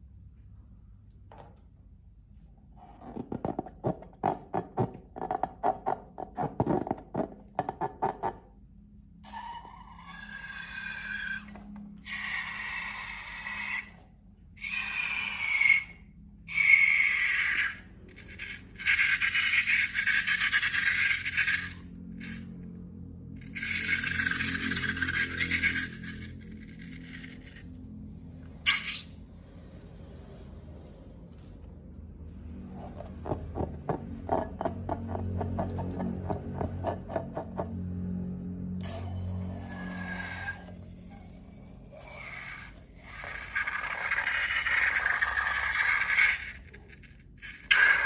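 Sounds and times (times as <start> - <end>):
rubber balloon squeaking on slime: 28.7 - 29.1.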